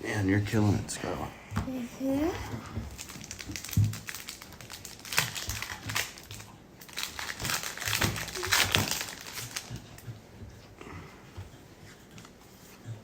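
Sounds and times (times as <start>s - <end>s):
foil wrapper crinkling: 2.9s - 10.0s.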